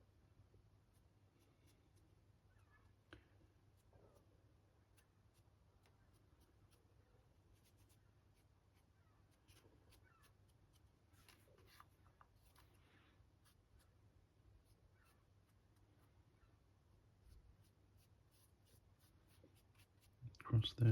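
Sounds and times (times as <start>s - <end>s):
paintbrush bristles scratching: 4.9s - 12.8s, 17.2s - 20.2s.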